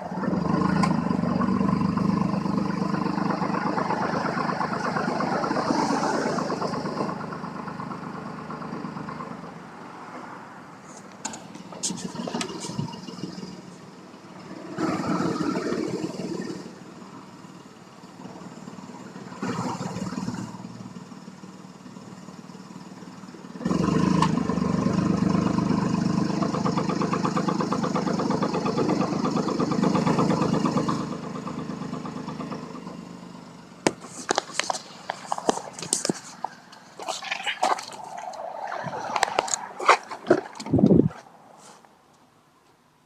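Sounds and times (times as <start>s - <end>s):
car engine idling: 0.0s - 43.0s
muffler rattle: 11.2s - 13.8s, 33.8s - 41.3s.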